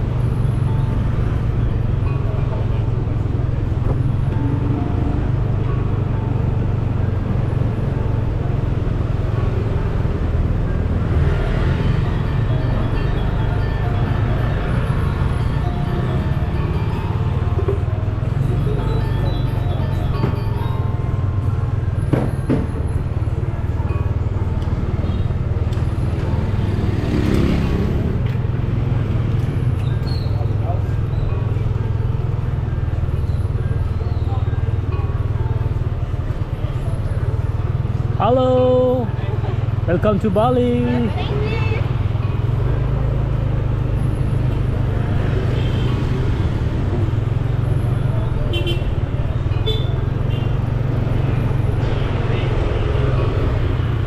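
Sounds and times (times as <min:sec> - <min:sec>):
low rumble of traffic: 0:00.0 - 0:54.0
vehicle passing: 0:24.4 - 0:31.2.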